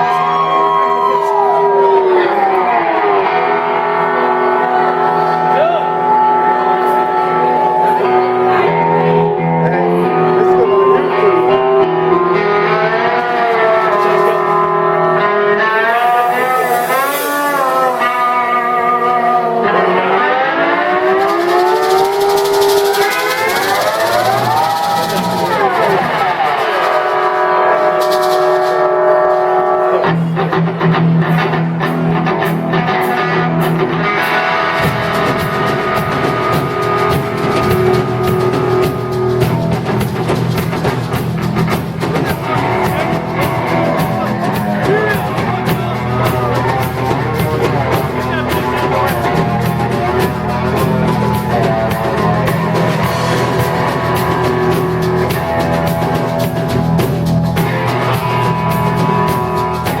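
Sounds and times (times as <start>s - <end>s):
rock band playing: 0.0s - 60.0s
distorted electric guitar chord: 2.4s - 60.0s
drum kit steady beat: 21.0s - 30.4s, 31.3s - 60.0s.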